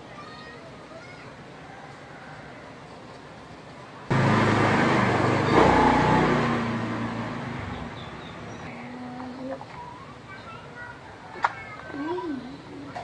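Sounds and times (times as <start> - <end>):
engine starting and revving: 4.1 - 8.7.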